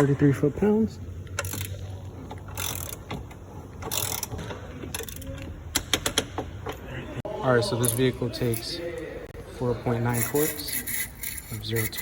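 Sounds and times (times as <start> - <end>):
torque wrench ratchet rasping: 1.3 - 1.9, 2.5 - 3.2, 3.8 - 5.4, 10.1 - 12.0.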